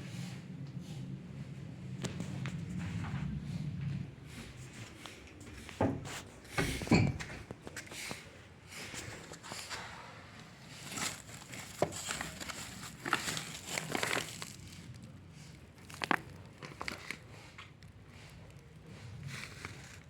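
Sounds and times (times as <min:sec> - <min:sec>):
material crinkling and rustling: 0:08.9 - 0:20.0.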